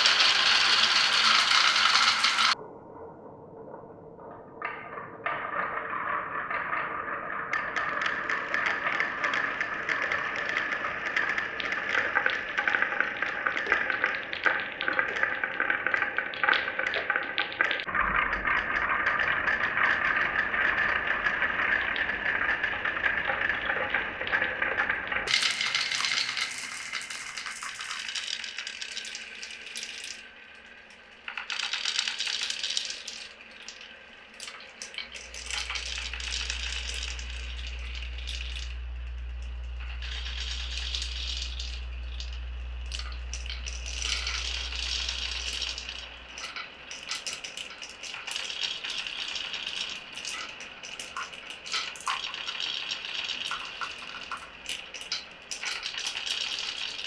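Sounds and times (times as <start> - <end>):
marbles rattling down wooden run: 0.0 - 2.6, 25.2 - 30.3, 34.5 - 38.8, 39.8 - 57.0.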